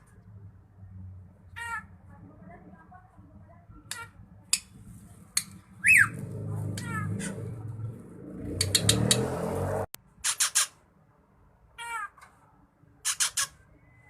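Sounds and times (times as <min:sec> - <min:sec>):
drongo calling: 0:05.3 - 0:07.6, 0:13.0 - 0:14.0.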